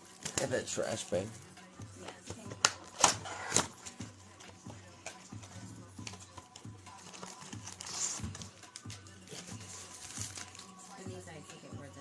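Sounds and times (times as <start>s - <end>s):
trading cards and wrappers rustling: 0.0s - 11.1s
wrapper crinkle: 6.9s - 11.0s.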